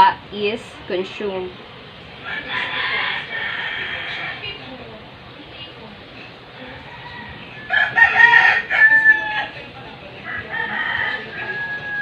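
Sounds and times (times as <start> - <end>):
rooster crowing: 2.2 - 4.6, 6.6 - 9.6, 10.2 - 12.0.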